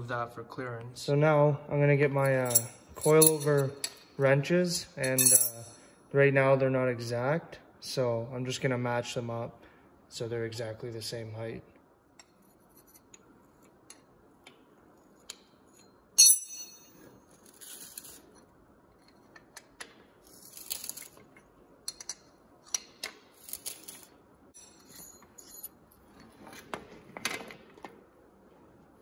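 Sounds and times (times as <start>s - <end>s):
metal clicks and clinks: 2.3s - 4.1s
metal clank: 16.2s - 17.0s.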